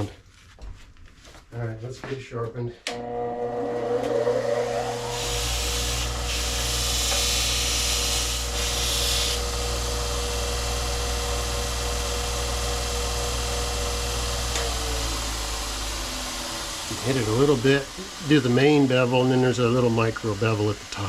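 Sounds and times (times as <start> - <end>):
belt grinder motor whine: 2.9 - 21.0
steel grinding on belt: 4.9 - 10.2, 14.2 - 21.0.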